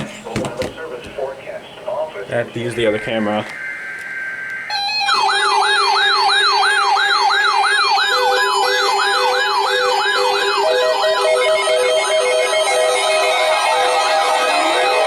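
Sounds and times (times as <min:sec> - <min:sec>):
electronic siren alert tone: 0:03.5 - 0:15.0.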